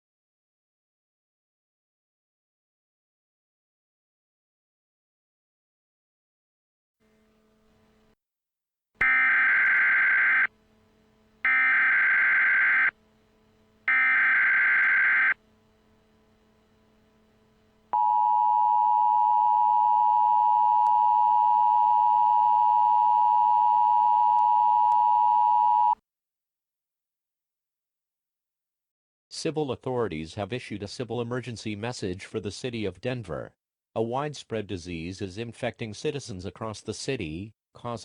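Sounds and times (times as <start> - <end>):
harsh two-tone attention signal: 9.0 - 10.5, 11.5 - 13.0, 13.9 - 15.4
screeching data bursts: 9.0 - 10.5, 11.5 - 12.9, 13.9 - 15.4.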